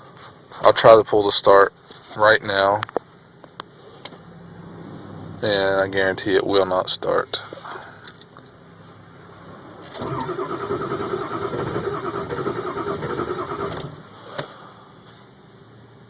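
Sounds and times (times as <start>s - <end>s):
starter cranking diesel engine: 9.8s - 14.1s.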